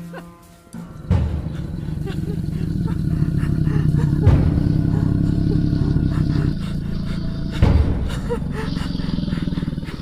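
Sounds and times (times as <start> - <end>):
low rumbling roar: 1.0 - 10.0.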